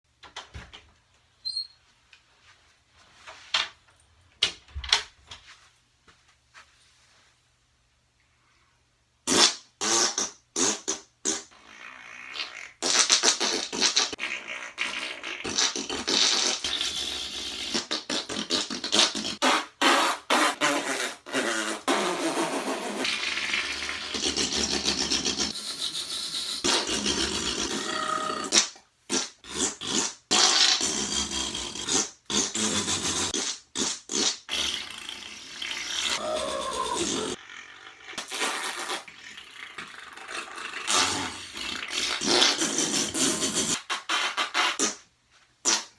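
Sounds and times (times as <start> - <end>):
fart noises: 9.2 - 25.6, 26.6 - 45.9.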